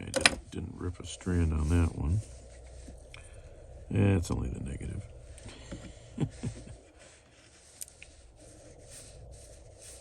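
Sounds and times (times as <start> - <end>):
fingers rubbing stranded wire: 6.3 - 10.0.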